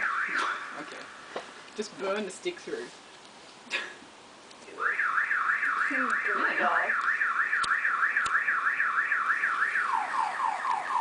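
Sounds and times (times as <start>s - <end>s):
car alarm warbling: 0.0s - 1.2s, 4.8s - 11.0s.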